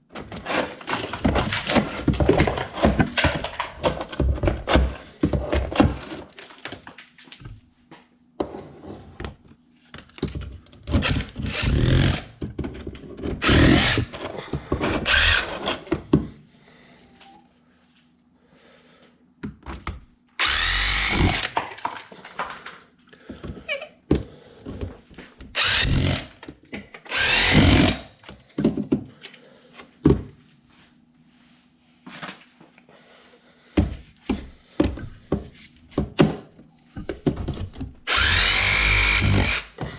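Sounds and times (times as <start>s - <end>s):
rotary hammer chiselling ice: 10.9s - 12.4s, 13.4s - 15.7s, 20.4s - 21.9s, 25.6s - 26.4s, 27.2s - 28.2s, 38.1s - 39.9s.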